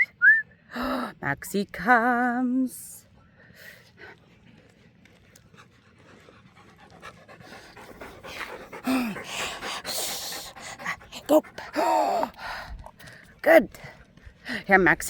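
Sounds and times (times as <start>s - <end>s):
dog panting: 3.7s - 14.8s.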